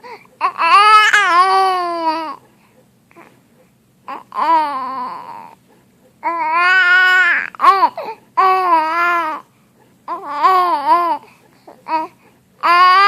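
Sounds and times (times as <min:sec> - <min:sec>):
baby crying: 0:00.4 - 0:02.4, 0:04.1 - 0:05.6, 0:06.2 - 0:09.5, 0:10.1 - 0:13.0.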